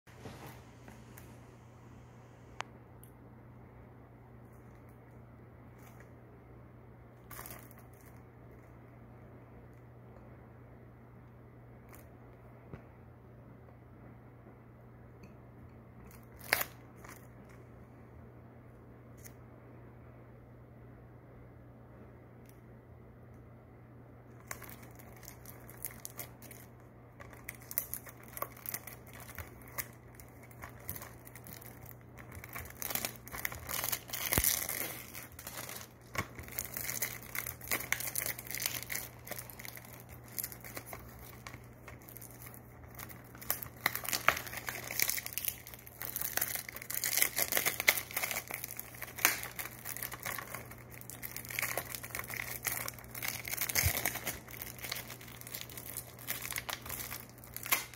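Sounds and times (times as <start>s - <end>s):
plastic wrap crinkling and tearing: 7.2s - 8.7s, 16.1s - 17.6s, 24.3s - 57.9s.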